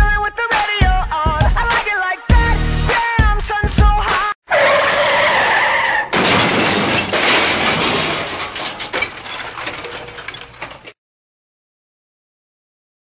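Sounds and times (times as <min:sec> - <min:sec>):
car tyres screeching: 0:04.5 - 0:10.9
car crash: 0:04.5 - 0:11.0
glass shattering: 0:06.0 - 0:11.0.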